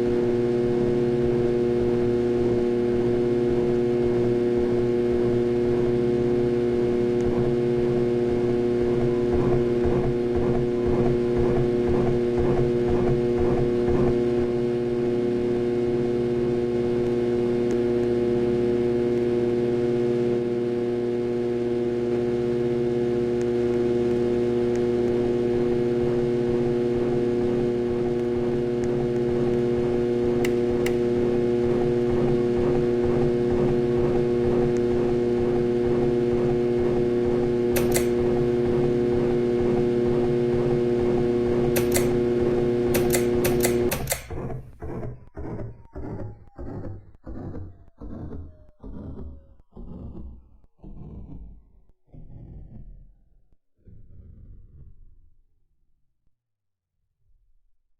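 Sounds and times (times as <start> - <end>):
ceiling fan motor humming: 0.0 - 50.4
short clicks: 30.3 - 31.0, 37.6 - 38.5, 41.6 - 47.6.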